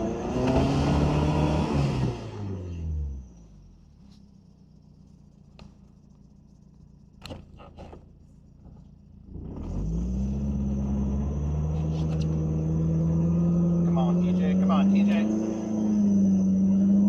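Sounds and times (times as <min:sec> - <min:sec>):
engine revving under load: 0:00.0 - 0:03.4, 0:09.2 - 0:17.0.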